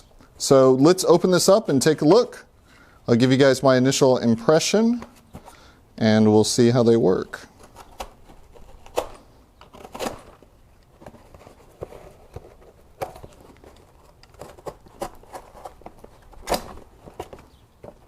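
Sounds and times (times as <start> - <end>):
cardboard box being handled: 7.6 - 18.0.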